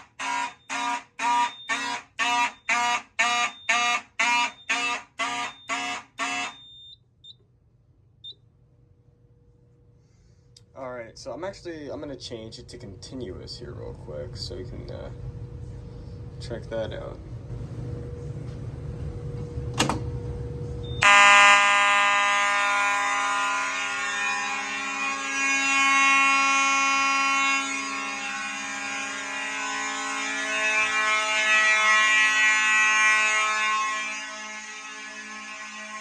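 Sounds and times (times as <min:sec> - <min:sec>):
fire alarm horns: 0:00.0 - 0:07.4, 0:20.8 - 0:36.0.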